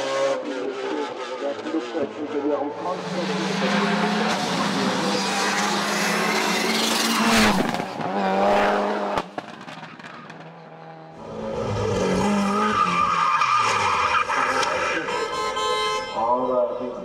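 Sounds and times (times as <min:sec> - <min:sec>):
racing car engine revving: 0:00.0 - 0:09.4.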